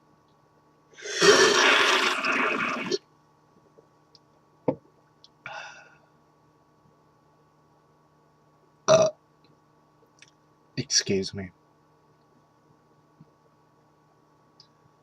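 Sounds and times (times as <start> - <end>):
slurping soda from a can: 1.0 - 3.0.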